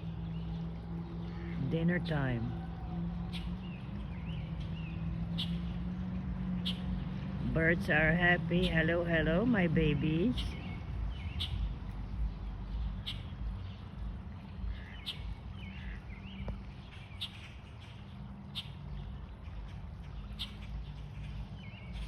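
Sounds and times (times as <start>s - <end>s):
steady low rumble: 0.0s - 22.0s
warbling bird calls: 0.0s - 22.0s
high bird chirps: 10.3s - 11.9s.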